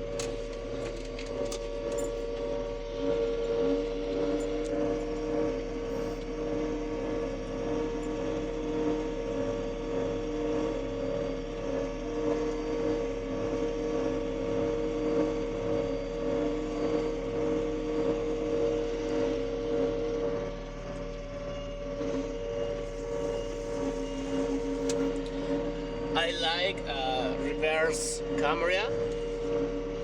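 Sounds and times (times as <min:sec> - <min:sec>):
combine harvester drone: 0:00.0 - 0:30.0.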